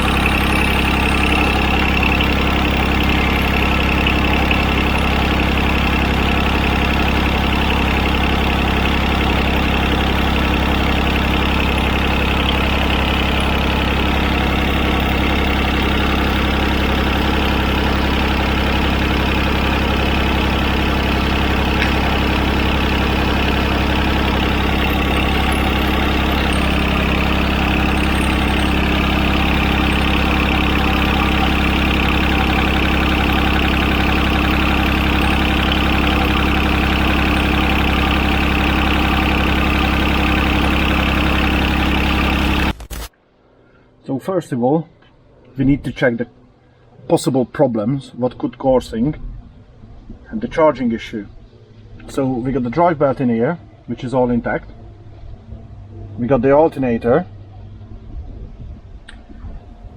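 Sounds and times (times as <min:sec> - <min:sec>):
tractor diesel engine idling: 0:00.0 - 0:42.8.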